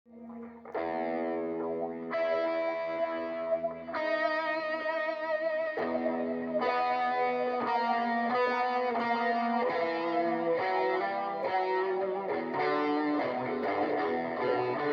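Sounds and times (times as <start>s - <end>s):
overdriven electric guitar: 0.1s - 14.9s.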